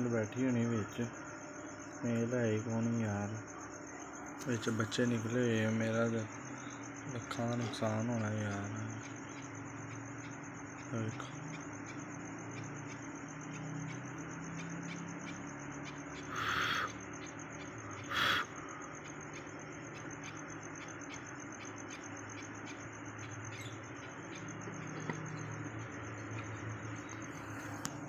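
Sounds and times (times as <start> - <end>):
birds chirping: 0.0 - 28.0
harsh hiss-like burst: 18.1 - 18.5.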